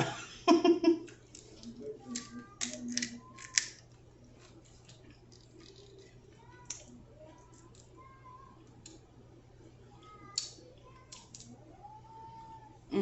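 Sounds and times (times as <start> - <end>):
crab shells cracking: 1.1 - 8.1, 8.7 - 9.1, 10.3 - 11.6.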